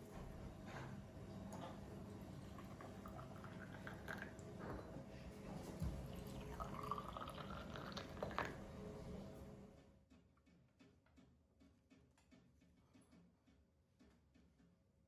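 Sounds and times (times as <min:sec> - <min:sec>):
liquid being poured: 0:02.4 - 0:04.4, 0:05.9 - 0:08.6.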